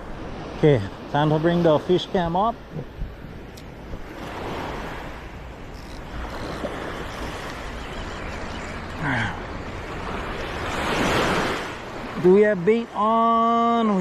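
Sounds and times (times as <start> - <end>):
surf washing over reef: 0.0 - 14.0
wind buffeting microphone: 2.2 - 12.2.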